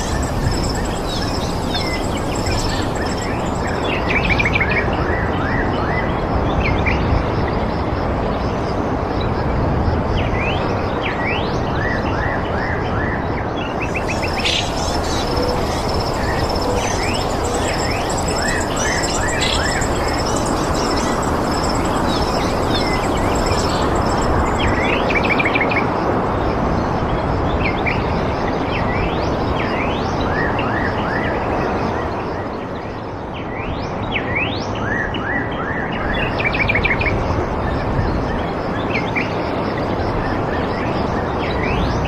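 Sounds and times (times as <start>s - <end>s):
small birds chirping: 0.0s - 4.6s, 13.8s - 25.4s
steady rushing noise: 0.0s - 4.6s, 13.7s - 25.5s
thin high trill: 0.0s - 4.6s, 13.9s - 25.4s.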